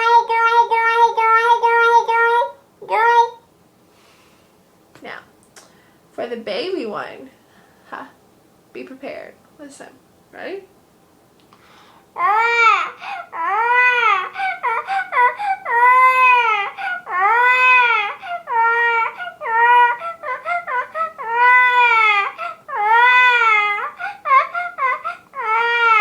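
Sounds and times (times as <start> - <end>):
girl imitating crying baby: 0.0 - 3.4, 12.2 - 26.0.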